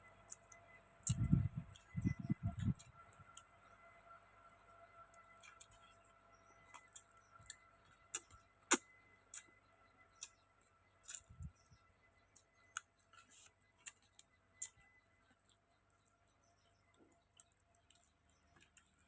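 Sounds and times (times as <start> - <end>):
lip-smacking while chewing: 1.0 - 2.0.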